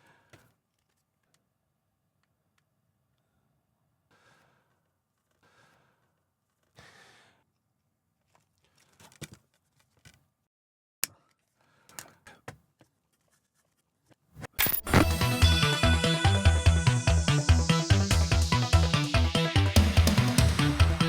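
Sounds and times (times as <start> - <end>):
clicks and crinkles: 8.2 - 10.3, 12.8 - 15.1
music: 14.9 - 21.0.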